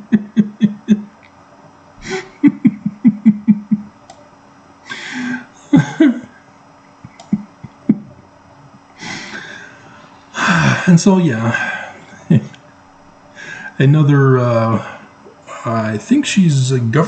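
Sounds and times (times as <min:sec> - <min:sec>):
man laughing: 0:00.0 - 0:01.2, 0:02.0 - 0:03.9, 0:04.9 - 0:08.3, 0:09.0 - 0:12.6, 0:13.4 - 0:14.9, 0:15.5 - 0:17.0
breathy exhalations: 0:02.0 - 0:02.4, 0:04.8 - 0:05.6, 0:09.0 - 0:12.1, 0:13.4 - 0:13.8.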